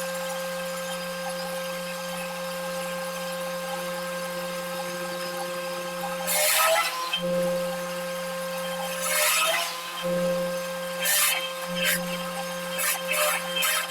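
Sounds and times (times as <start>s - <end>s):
wood shaper motor hum: 0.0s - 13.9s
cutter cutting wood: 4.5s - 13.9s.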